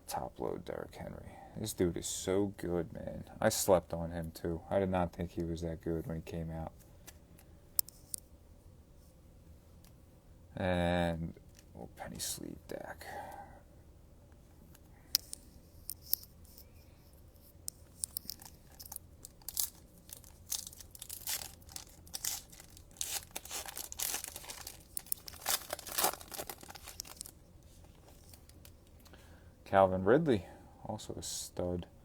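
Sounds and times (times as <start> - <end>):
foil pack tearing and crinkling: 18.0 - 27.4.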